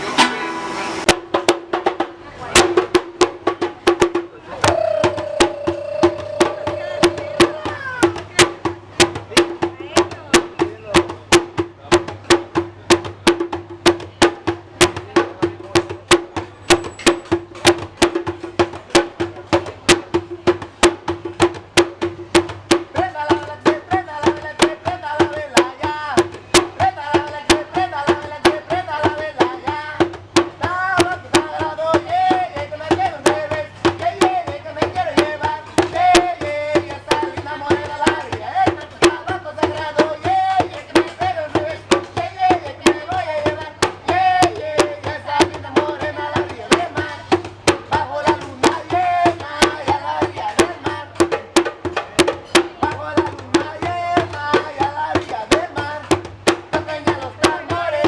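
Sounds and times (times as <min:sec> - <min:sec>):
percussive clicks beat: 0:02.6 - 0:15.0
wavering melody: 0:04.5 - 0:08.2
held drone note: 0:04.6 - 0:07.7.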